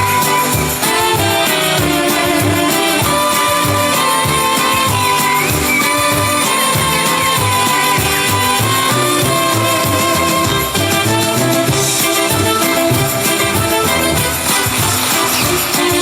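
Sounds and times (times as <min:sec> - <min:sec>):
loud music with a steady beat: 0:00.0 - 0:16.0.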